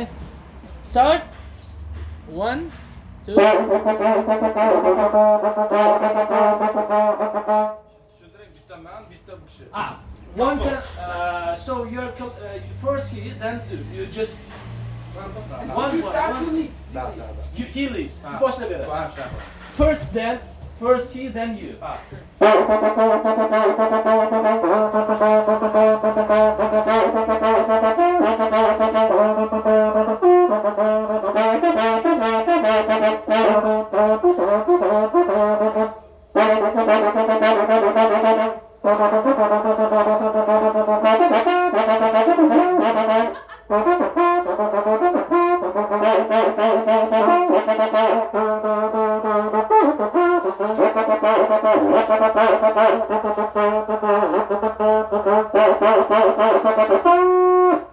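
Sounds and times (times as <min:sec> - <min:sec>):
long brass trumpet blasts: 0:03.3 - 0:08.0, 0:22.4 - 0:57.9.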